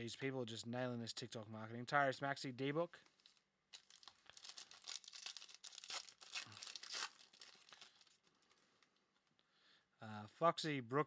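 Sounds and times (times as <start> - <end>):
foil wrapper tearing and crinkling: 3.2 - 8.6.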